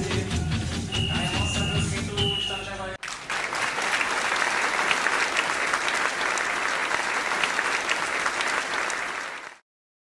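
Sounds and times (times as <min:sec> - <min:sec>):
crowd applauding: 0:03.0 - 0:09.6.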